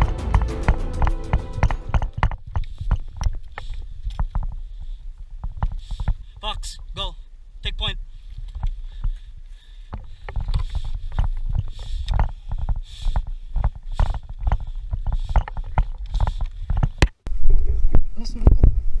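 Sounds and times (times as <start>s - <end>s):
footsteps: 0.0s - 2.4s.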